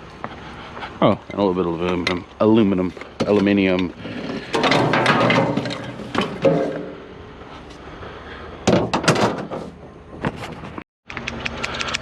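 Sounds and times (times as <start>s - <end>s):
scrap metal knocking and clattering: 3.2s - 7.2s, 8.6s - 10.8s.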